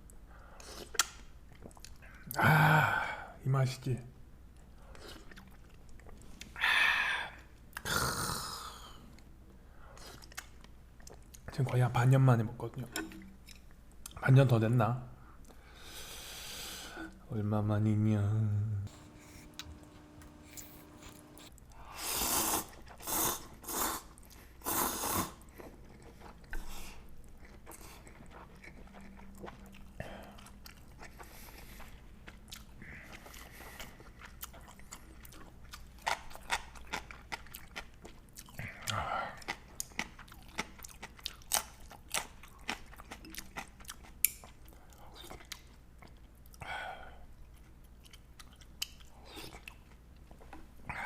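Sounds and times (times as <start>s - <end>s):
person chewing with smacks: 0.6s - 2.3s, 4.6s - 6.6s, 10.0s - 11.5s, 18.9s - 21.7s, 25.3s - 46.6s, 47.4s - 50.7s
person slurping noodles: 18.9s - 25.5s.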